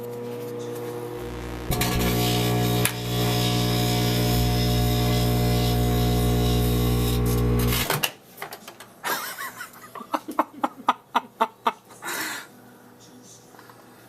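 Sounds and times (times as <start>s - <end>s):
microwave oven buzzing hum: 0.0s - 8.0s
sharp clicks and crackles: 1.2s - 3.3s.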